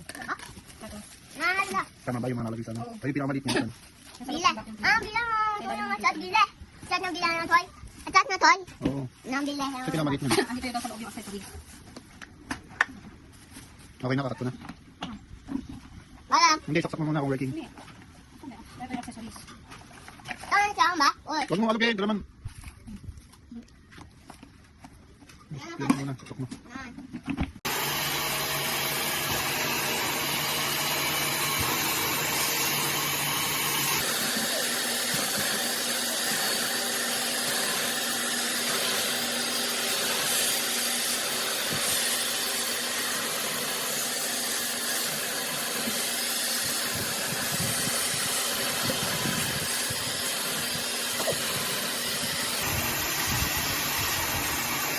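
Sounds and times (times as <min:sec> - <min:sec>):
vacuum cleaner running: 0:27.6 - 0:54.9.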